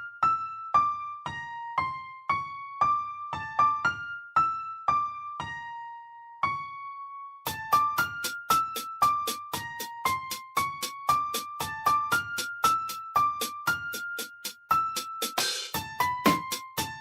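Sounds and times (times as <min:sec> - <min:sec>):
slow keyboard melody: 0:00.0 - 0:17.0.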